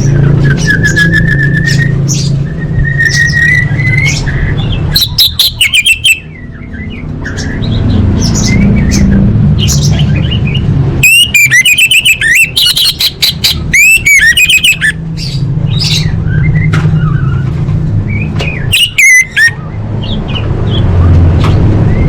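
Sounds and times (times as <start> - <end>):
thrush singing whistled phrases: 0.0 - 7.6, 10.2 - 15.0, 18.1 - 19.6.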